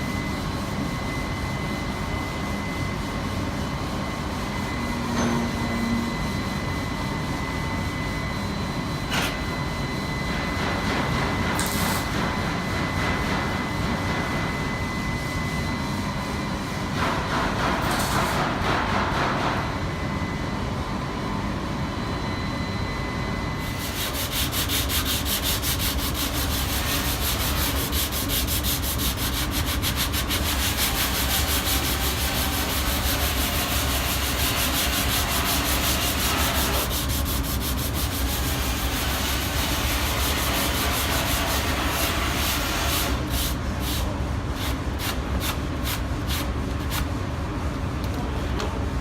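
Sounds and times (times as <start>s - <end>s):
sanding car bodywork: 23.6s - 47.1s.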